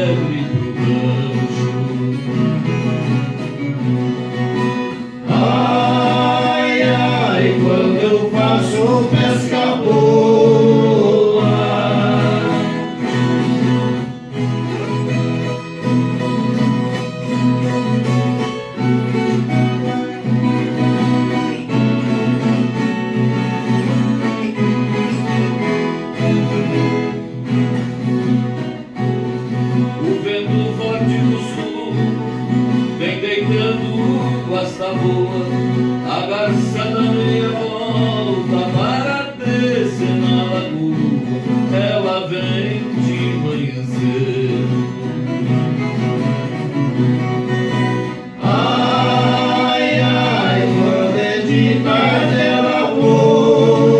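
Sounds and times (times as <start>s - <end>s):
plucked string melody: 0.0s - 53.9s
strummed guitar chords: 0.0s - 53.9s
voices singing: 5.2s - 13.8s, 48.3s - 53.9s.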